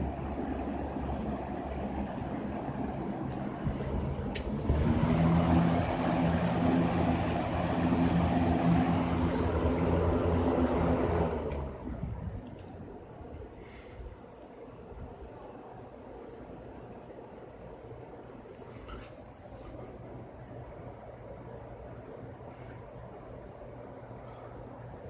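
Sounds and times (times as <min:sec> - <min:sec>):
fan motor humming: 0:00.0 - 0:13.8
fan switch click: 0:04.3 - 0:04.6.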